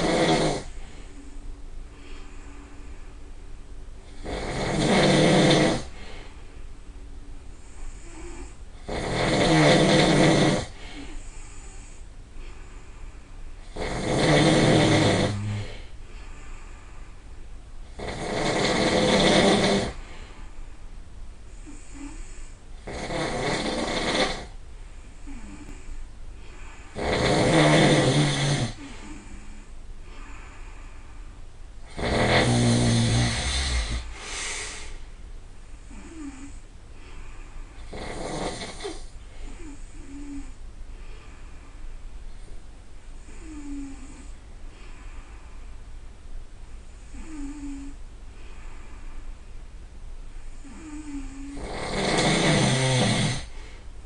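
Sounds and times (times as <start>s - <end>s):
person snoring loudly: 0.0s - 0.8s, 4.1s - 6.2s, 7.9s - 11.3s, 13.6s - 15.9s, 17.9s - 20.1s, 21.6s - 24.6s, 26.9s - 29.7s, 31.8s - 34.9s, 35.9s - 36.6s, 37.8s - 40.6s, 43.2s - 44.3s, 47.1s - 48.0s, 50.6s - 53.6s.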